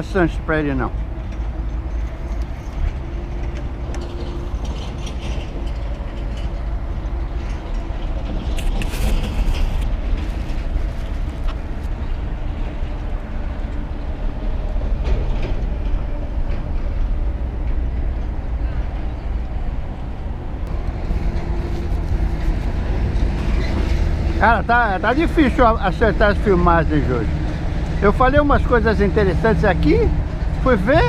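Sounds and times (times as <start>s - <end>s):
heavy truck traffic: 0.0s - 31.0s
wind buffeting microphone: 0.0s - 31.0s
brief rustle: 8.5s - 11.9s.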